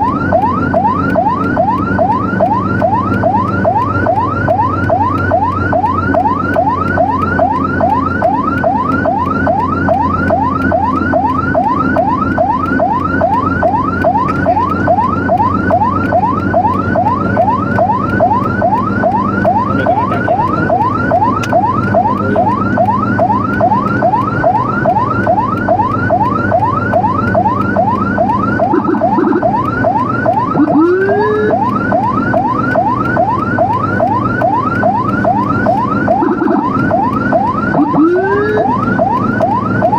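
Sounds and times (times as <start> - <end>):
low vehicle hum: 0.0 - 39.9
siren in fast yelp: 0.0 - 39.9
slower rising siren whoop: 0.0 - 39.9.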